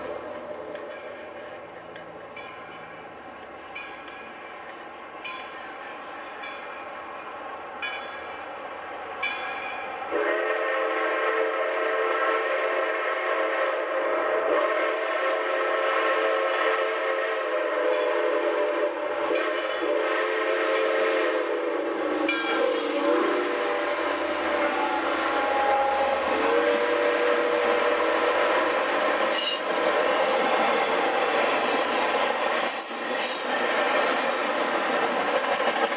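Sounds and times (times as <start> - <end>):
train starting to move: 0.0 - 35.9
steam whistle chord: 10.1 - 29.8.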